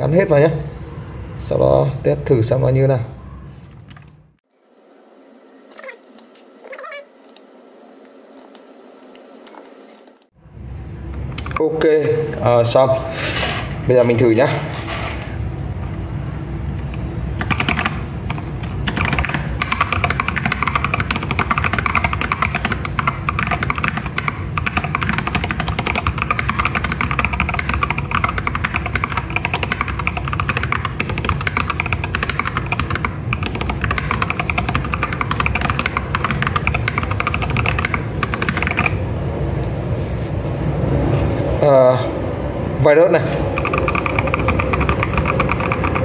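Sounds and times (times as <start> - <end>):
typing on mechanical keyboard: 17.4 - 39.0, 43.5 - 46.0.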